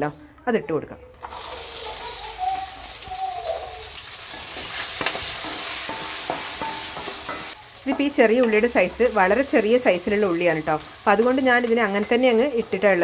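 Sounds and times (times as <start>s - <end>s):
shallots sizzling in oil: 1.2s - 13.0s
utensil knocking against pan: 4.3s - 8.6s.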